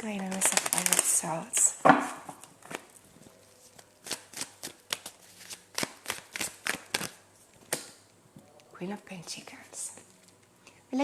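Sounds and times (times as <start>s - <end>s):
cards being shuffled: 3.6s - 8.0s.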